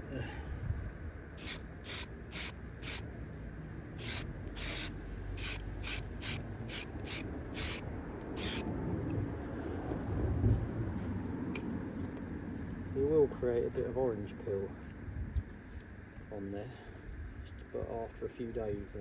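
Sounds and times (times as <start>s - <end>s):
aerosol spray can hissing: 1.4s - 3.0s, 4.0s - 7.8s, 8.4s - 8.6s.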